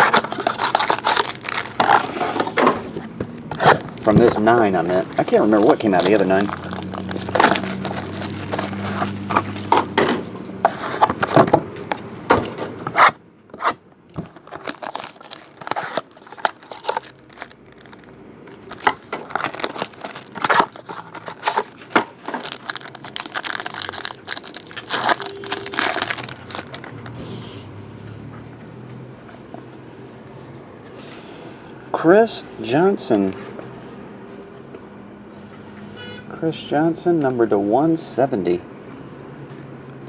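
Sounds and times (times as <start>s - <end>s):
wrapping crinkling and tearing: 0.0s - 2.4s, 3.4s - 10.0s, 13.0s - 27.1s
cards and packaging handled: 0.0s - 2.6s, 3.2s - 10.0s, 10.6s - 12.0s, 12.8s - 27.2s.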